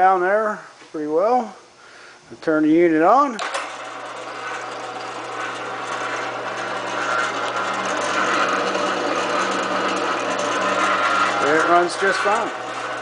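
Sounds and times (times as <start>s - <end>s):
drill press motor humming: 3.4s - 13.0s.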